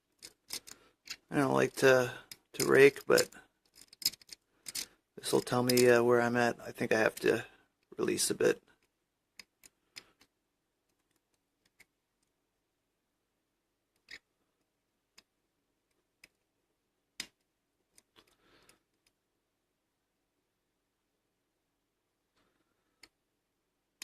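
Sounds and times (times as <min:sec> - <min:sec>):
lock pick metallic clicks: 0:02.2 - 0:06.0.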